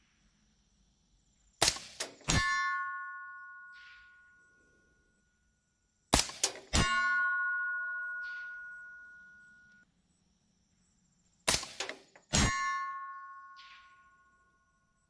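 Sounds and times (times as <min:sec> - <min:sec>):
rifle shots: 0:01.6 - 0:02.5, 0:06.2 - 0:07.0, 0:11.5 - 0:12.6
bullet clanging on steel target: 0:01.6 - 0:04.6, 0:06.2 - 0:09.8, 0:11.5 - 0:14.4.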